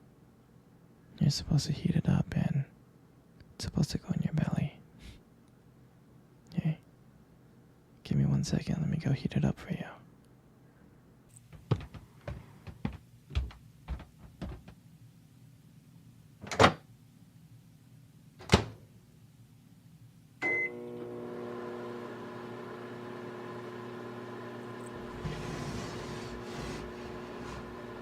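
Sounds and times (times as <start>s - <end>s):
microwave oven humming: 20.4s - 28.0s.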